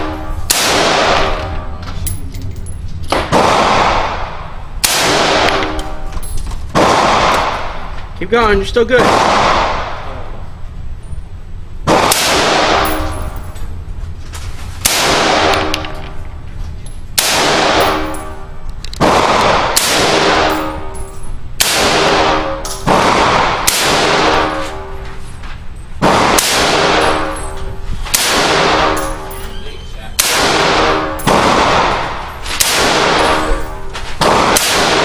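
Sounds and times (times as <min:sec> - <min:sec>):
rifle shots ringing: 0:00.0 - 0:07.9, 0:11.9 - 0:13.6, 0:14.8 - 0:16.2, 0:17.1 - 0:25.0, 0:26.0 - 0:29.5, 0:30.2 - 0:35.0.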